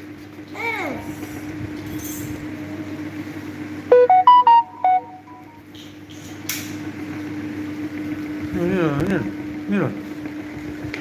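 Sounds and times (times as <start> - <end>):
steady hum: 3.8 - 5.7
electronic beeping jingle: 3.9 - 5.6.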